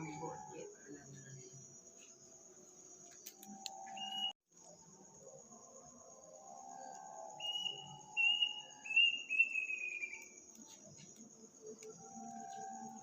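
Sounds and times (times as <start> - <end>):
insects chirring: 0.0 - 13.0
bird whistling notes: 3.9 - 4.3, 7.4 - 10.2.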